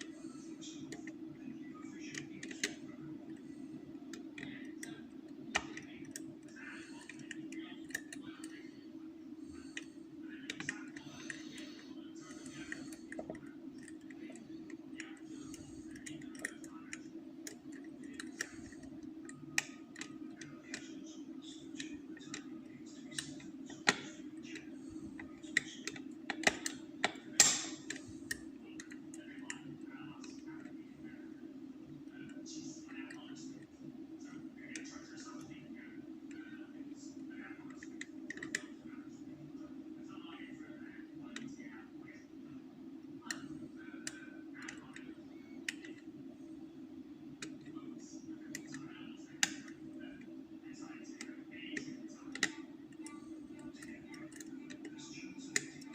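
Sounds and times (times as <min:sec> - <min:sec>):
steady low hum: 0:00.0 - 0:55.9.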